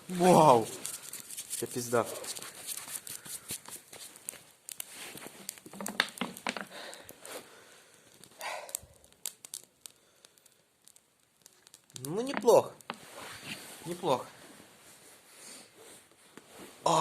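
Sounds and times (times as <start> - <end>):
brushwood fire crackling: 0.0 - 17.0
rustling bursts: 0.3 - 7.4.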